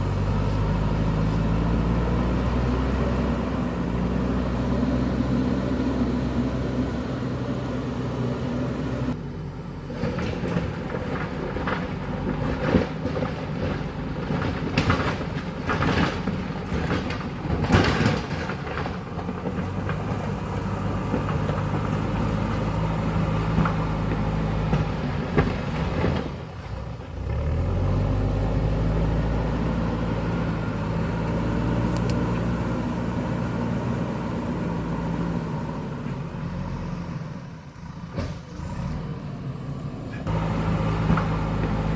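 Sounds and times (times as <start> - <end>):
diesel engine under load: 0.0 - 41.9
bucket clanking and scraping stone: 10.0 - 20.4.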